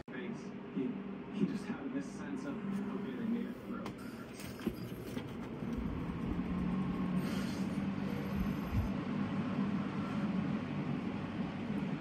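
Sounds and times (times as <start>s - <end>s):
electric fan running: 0.1s - 12.0s.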